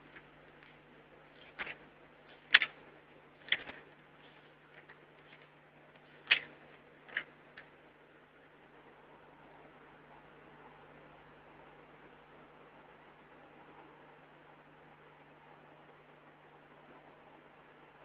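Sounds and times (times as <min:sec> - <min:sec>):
faint steady hum: 0:00.0 - 0:18.0
sharp clicks: 0:01.4 - 0:04.0, 0:04.8 - 0:07.8.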